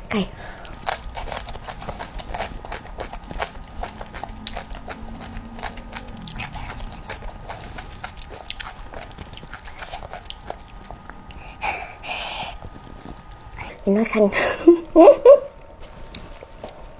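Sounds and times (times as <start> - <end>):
wet crunchy chewing: 0.6 - 11.7.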